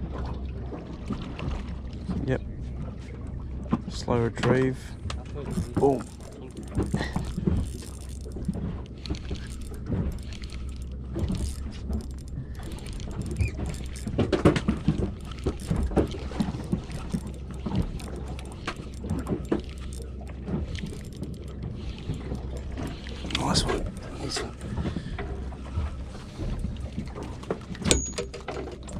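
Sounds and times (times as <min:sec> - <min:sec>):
low rumble: 0:00.0 - 0:27.9
wind and water noise: 0:00.0 - 0:28.9
knocks clicks and rattles: 0:04.4 - 0:25.5, 0:26.4 - 0:28.9.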